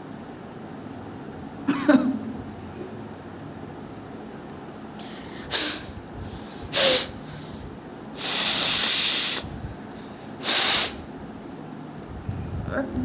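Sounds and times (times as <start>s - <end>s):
woman blowing air through nose: 5.4s - 7.3s, 8.2s - 9.6s, 10.4s - 11.1s.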